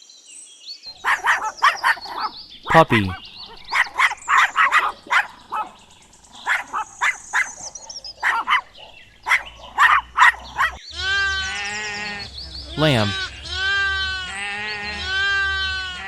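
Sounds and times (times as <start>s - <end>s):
puppy yapping: 6.5s - 8.6s.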